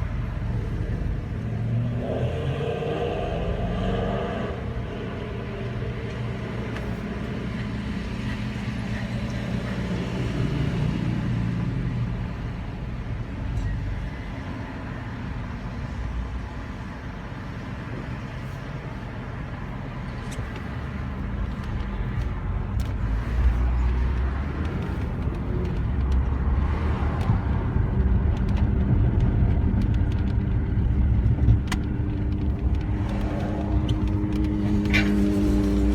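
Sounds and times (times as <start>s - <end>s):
car engine humming: 0.0s - 35.9s
grinding noise: 31.8s - 35.9s.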